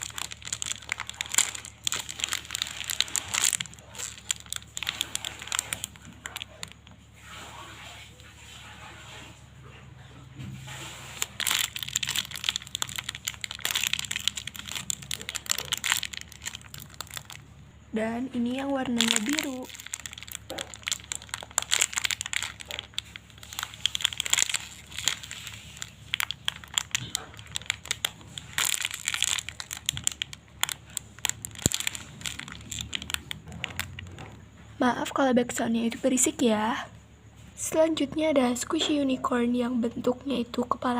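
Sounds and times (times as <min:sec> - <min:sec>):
plastic packaging crinkling: 0:00.0 - 0:08.1, 0:10.6 - 0:17.6, 0:18.2 - 0:34.5.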